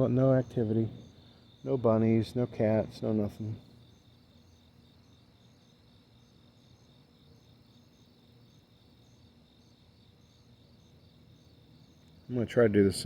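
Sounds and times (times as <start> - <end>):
distant traffic rumble: 0.0 - 3.8
crickets trilling: 0.0 - 13.0.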